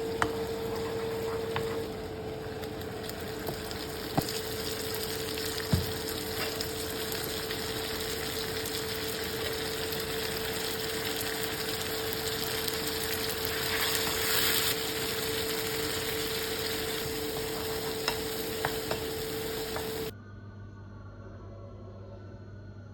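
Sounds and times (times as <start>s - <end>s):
food sizzling in hot oil: 0.0s - 20.1s.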